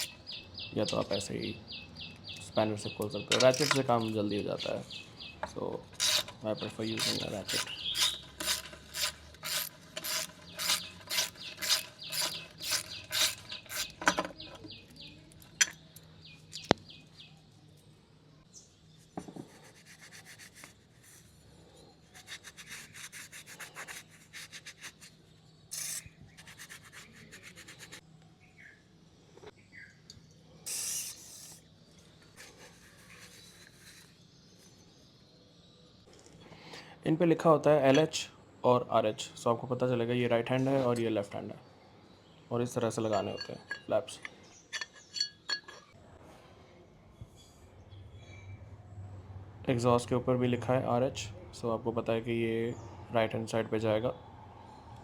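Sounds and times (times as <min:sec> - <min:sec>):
sharp metal clicks: 0:02.1 - 0:04.1, 0:05.9 - 0:16.8
socket ratchet clicking: 0:07.0 - 0:14.1.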